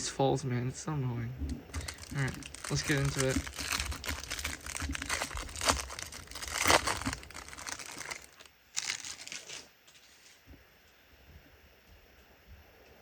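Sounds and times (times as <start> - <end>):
wrapper crinkling and tearing: 1.7 - 10.2.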